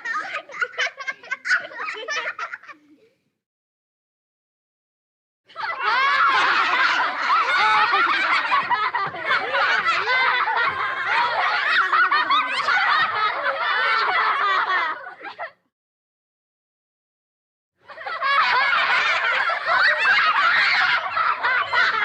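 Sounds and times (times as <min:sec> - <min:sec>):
children laughing: 0:00.0 - 0:03.2, 0:05.5 - 0:15.7, 0:17.8 - 0:22.0.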